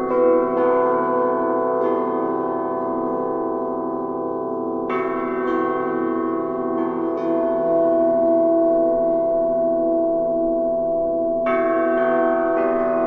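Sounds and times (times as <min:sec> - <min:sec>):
bronze bells ringing: 0:07.0 - 0:13.0.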